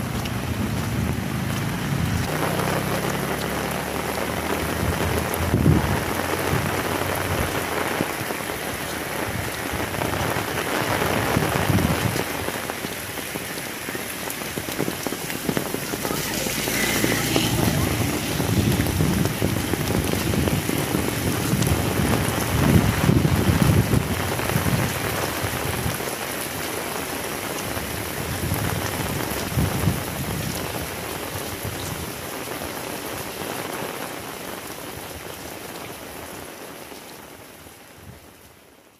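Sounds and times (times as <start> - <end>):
heavy rain pouring: 0.0 - 38.9
low rumbling: 15.3 - 24.0.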